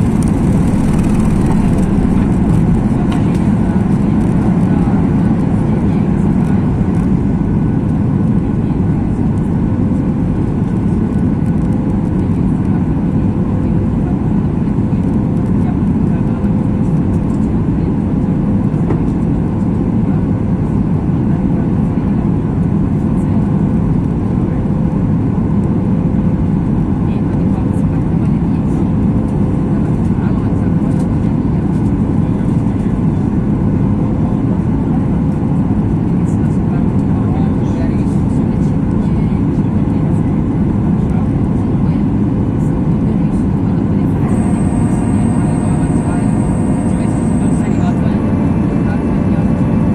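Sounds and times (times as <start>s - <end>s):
faint high whine: 0.0s - 3.9s, 44.0s - 49.9s
rushing airflow: 0.0s - 5.6s
faint constant hum: 0.0s - 49.9s
jet engines rumbling: 0.0s - 49.9s.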